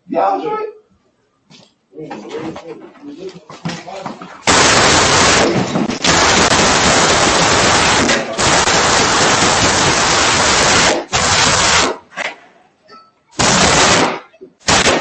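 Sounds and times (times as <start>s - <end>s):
rapid gunfire: 4.5s - 12.1s, 13.4s - 15.0s.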